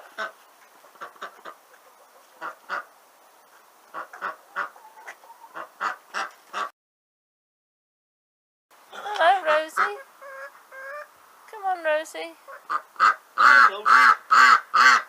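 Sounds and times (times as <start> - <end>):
ducks quacking: 0.0 - 3.0, 3.9 - 6.7, 8.9 - 11.1, 12.4 - 15.0.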